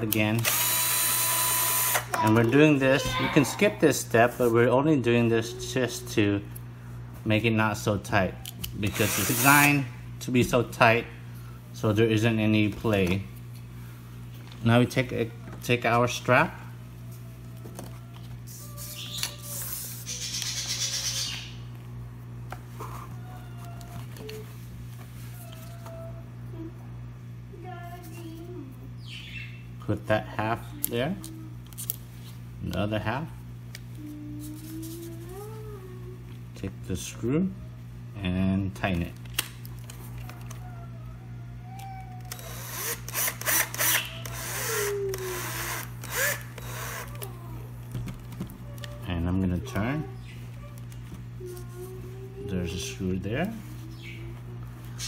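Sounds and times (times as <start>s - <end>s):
power drill driving a screw: 0.4s - 2.2s, 8.9s - 9.7s, 42.3s - 47.1s.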